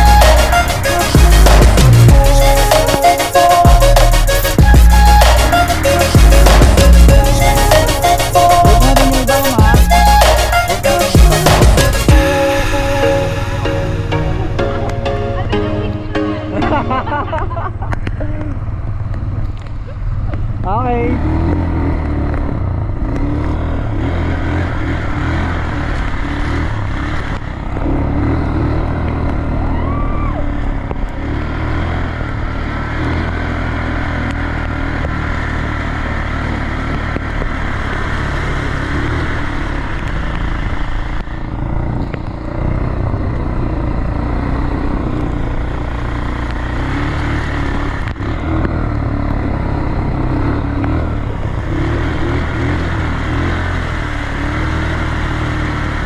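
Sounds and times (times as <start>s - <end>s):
quad bike engine running: 17.5s - 56.0s.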